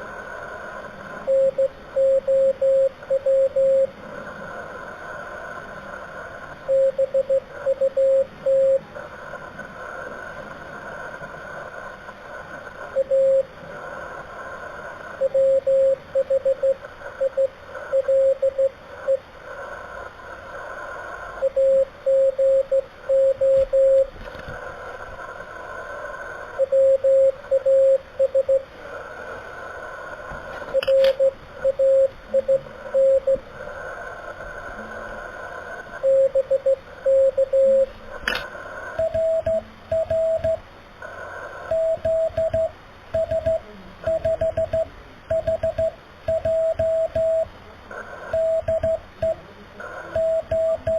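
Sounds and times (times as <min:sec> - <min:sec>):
receiver hiss: 0:00.0 - 0:50.9
morse code tone: 0:01.3 - 0:03.9, 0:06.6 - 0:08.8, 0:15.2 - 0:19.2, 0:21.4 - 0:24.1, 0:30.7 - 0:33.4, 0:36.0 - 0:37.9, 0:39.0 - 0:40.6, 0:41.7 - 0:47.5, 0:48.3 - 0:49.4, 0:50.1 - 0:50.9
sharp click: 0:38.2 - 0:38.5.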